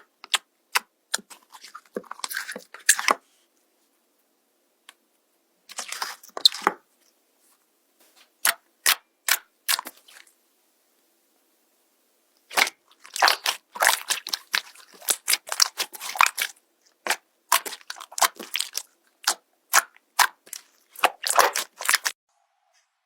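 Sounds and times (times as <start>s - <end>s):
slime crackling and popping: 12.4s - 22.2s.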